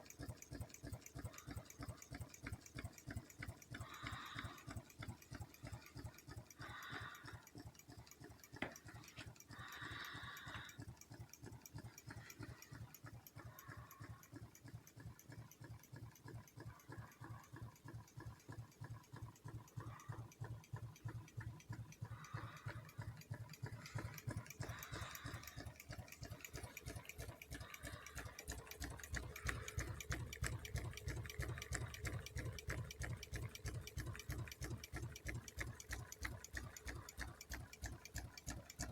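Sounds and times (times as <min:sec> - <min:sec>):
rhythmic hoof clatter: 0:00.0 - 0:38.9.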